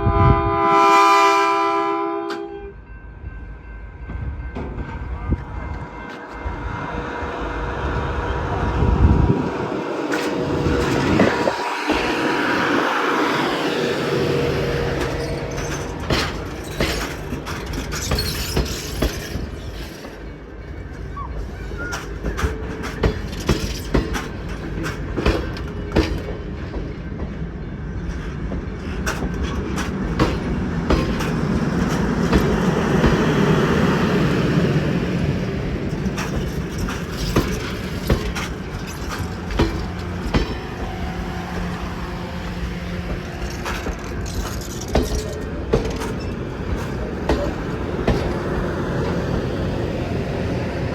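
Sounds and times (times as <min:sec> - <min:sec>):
train rumbling on track: 0:00.0 - 0:50.9
wheel clicks on rail joints: 0:14.9 - 0:20.3, 0:21.7 - 0:26.9, 0:28.1 - 0:33.3, 0:35.8 - 0:49.4.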